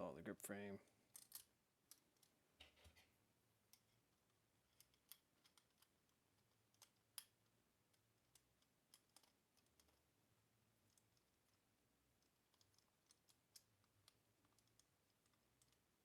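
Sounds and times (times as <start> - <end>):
small metal parts clicking: 1.1 - 2.9, 4.7 - 10.0, 12.2 - 15.8.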